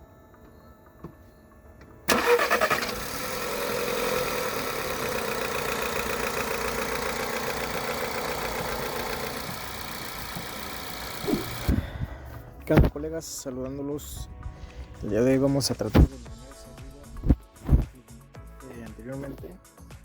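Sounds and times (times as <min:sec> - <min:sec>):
car engine starting and idling: 0:02.1 - 0:12.5.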